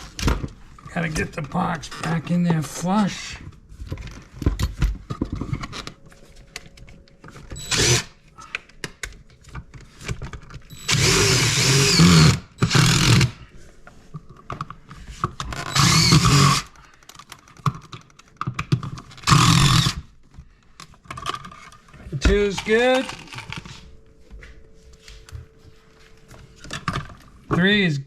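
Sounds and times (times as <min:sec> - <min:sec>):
impact driver driving screws: 0:07.6 - 0:08.1, 0:10.7 - 0:13.4, 0:15.6 - 0:16.7, 0:19.2 - 0:20.1.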